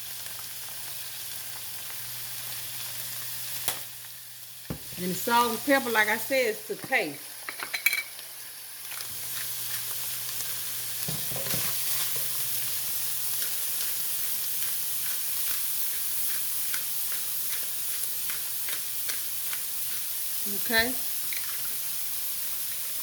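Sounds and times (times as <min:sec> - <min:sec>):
meat sizzling in a skillet: 0:00.0 - 0:23.0
spoon scraping a pan: 0:09.0 - 0:12.4, 0:13.2 - 0:21.8.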